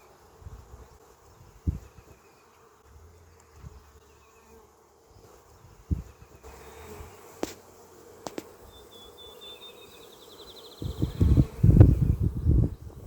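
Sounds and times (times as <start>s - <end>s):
honeybees buzzing: 0.0s - 13.0s
dull low thumps: 1.6s - 1.9s, 5.8s - 6.1s.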